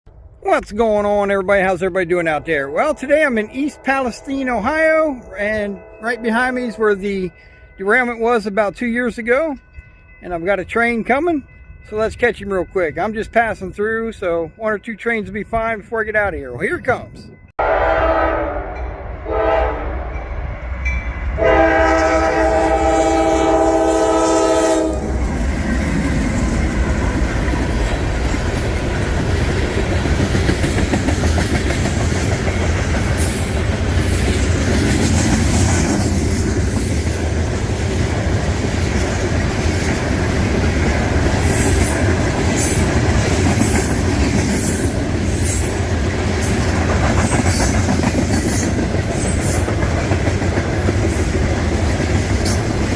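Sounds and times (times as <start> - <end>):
rumble of passing train: 0.1 - 52.9
locomotive air horn blasts: 17.6 - 20.2, 21.4 - 25.2.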